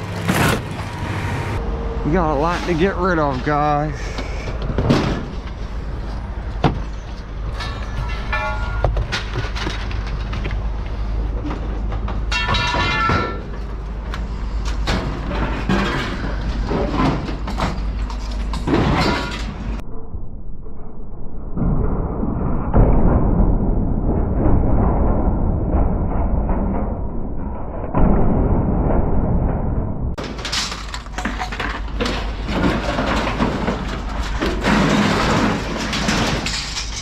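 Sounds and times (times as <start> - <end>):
scrap metal clanking and banging: 0.0 - 19.8, 30.1 - 37.0
metal piece ringing: 7.6 - 9.0.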